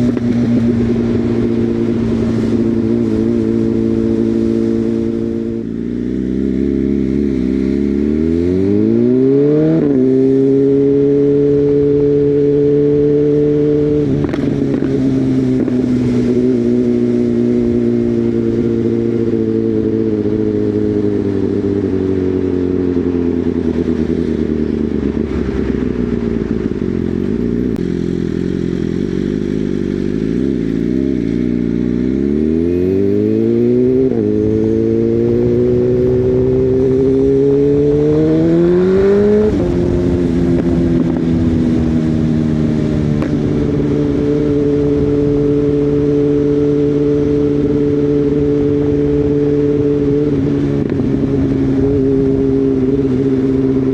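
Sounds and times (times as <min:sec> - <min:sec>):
motorcycle engine revving: 0:00.0 - 0:53.9.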